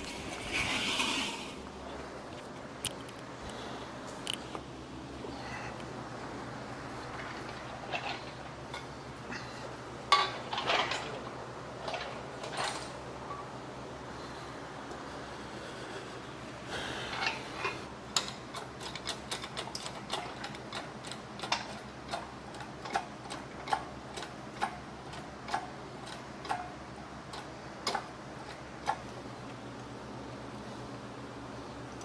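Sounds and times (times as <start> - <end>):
metal scrape: 0.0 - 1.7.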